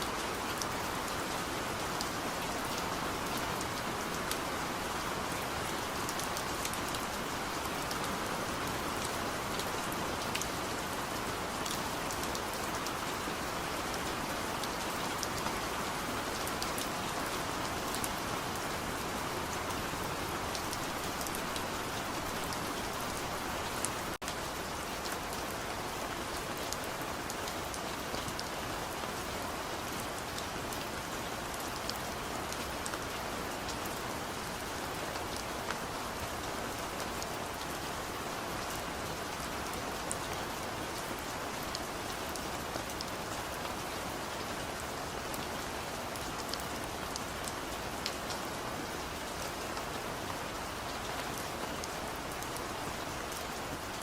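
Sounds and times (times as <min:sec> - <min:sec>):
raindrops ticking on a surface: 0:00.0 - 0:54.0
steady rain falling: 0:00.0 - 0:54.0.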